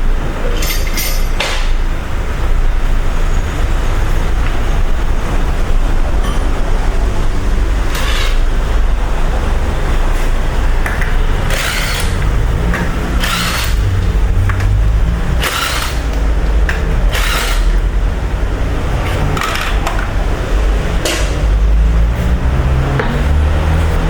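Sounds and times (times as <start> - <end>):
steady low rumble: 1.7 - 24.0
power tool bursts: 7.9 - 8.4, 11.5 - 12.2, 13.2 - 13.9, 15.4 - 16.2, 17.1 - 17.8.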